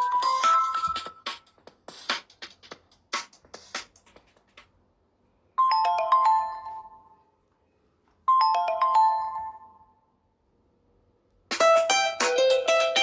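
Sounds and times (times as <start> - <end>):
phone ringtone chime notes: 0.0 - 1.3, 5.6 - 7.3, 8.3 - 10.0
busier phone ringtone: 5.6 - 7.2, 8.3 - 10.0.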